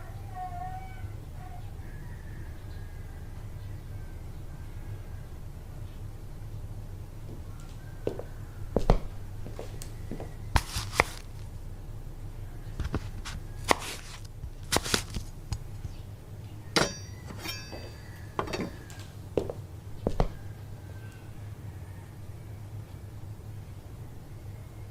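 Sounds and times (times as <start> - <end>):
low steady hum: 0.0 - 24.9
ringing metallic clink: 16.8 - 18.8.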